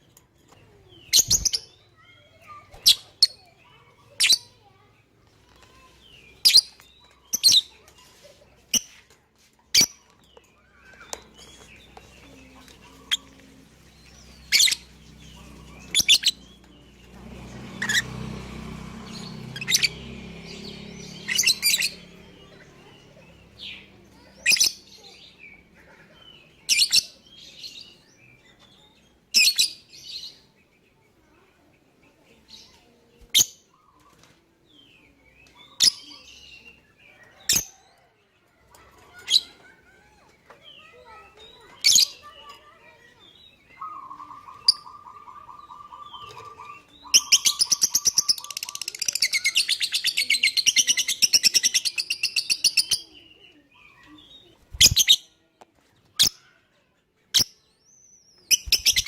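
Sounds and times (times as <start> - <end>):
bird shrill chirps: 40.7 - 53.2.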